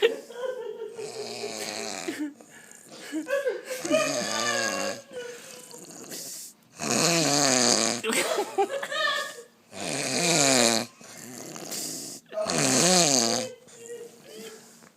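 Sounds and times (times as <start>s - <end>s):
person snoring loudly: 1.0s - 2.9s, 3.8s - 8.1s, 9.7s - 13.5s.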